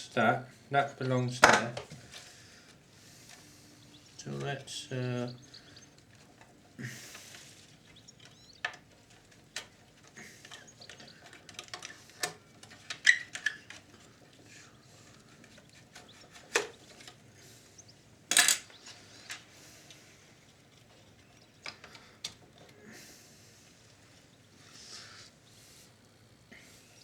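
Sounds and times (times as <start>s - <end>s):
clicks and taps of tools and parts: 1.4s - 2.0s, 8.2s - 14.1s, 15.4s - 17.2s, 18.3s - 19.5s, 21.6s - 22.8s
parts clattering: 18.2s - 19.5s.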